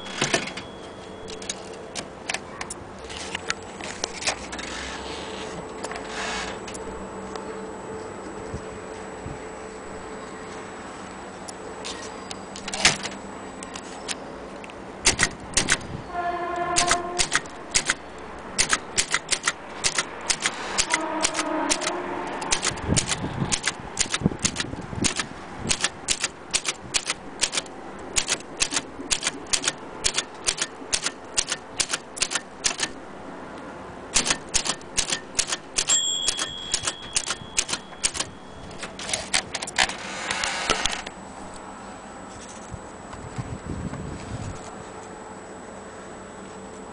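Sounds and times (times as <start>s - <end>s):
manual typewriter key strikes: 15.0s - 15.9s, 16.8s - 18.0s, 18.6s - 33.0s, 34.2s - 39.9s.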